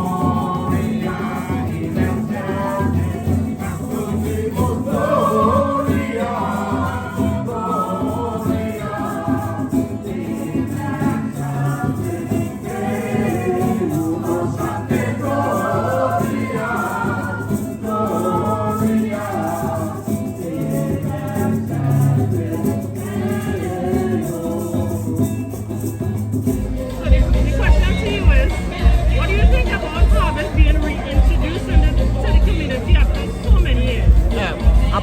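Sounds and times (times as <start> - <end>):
group singing to music: 0.0 - 35.0
maracas shaking: 0.0 - 35.0.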